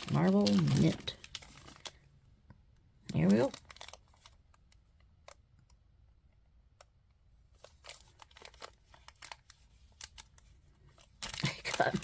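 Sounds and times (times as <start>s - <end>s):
plastic bag crinkling: 0.0s - 2.1s, 3.1s - 4.5s, 7.6s - 12.0s.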